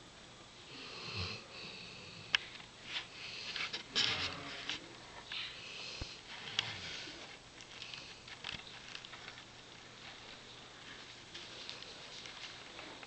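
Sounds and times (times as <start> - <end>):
dog snoring: 0.7 - 2.3.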